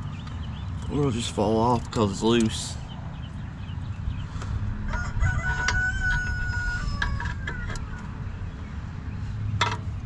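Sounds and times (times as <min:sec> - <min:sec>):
rooster crowing: 0:04.8 - 0:08.1.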